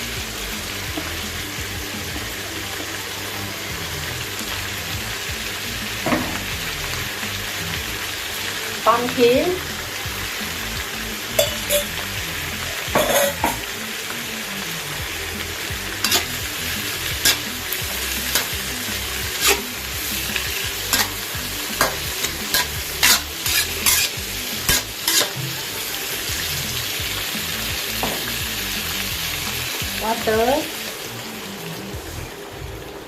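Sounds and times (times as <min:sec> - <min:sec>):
food sizzling in a pan: 0:00.0 - 0:33.0
spatula scraping a pan: 0:11.4 - 0:12.0, 0:13.0 - 0:13.6, 0:16.0 - 0:25.6.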